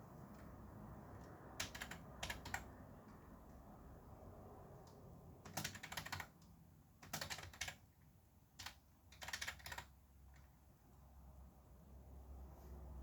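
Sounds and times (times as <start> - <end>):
typing on computer keyboard: 1.2 - 3.2, 4.8 - 10.5.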